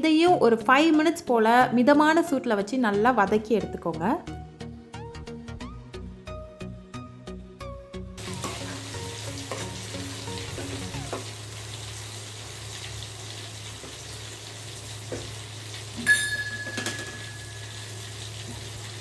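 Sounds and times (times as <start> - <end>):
chicken sizzling in a pan: 8.2 - 19.0.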